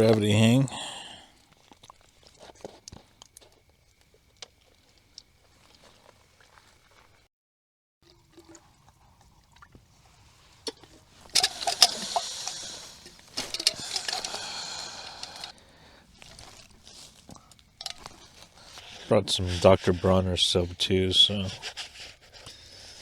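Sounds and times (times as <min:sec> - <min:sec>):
water streaming into container: 0:00.0 - 0:07.3, 0:08.0 - 0:23.0
faint handling clicks: 0:10.6 - 0:22.6.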